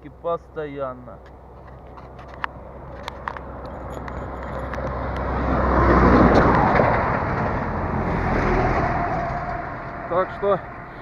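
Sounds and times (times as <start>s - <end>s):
vehicle passing by: 2.6s - 11.0s.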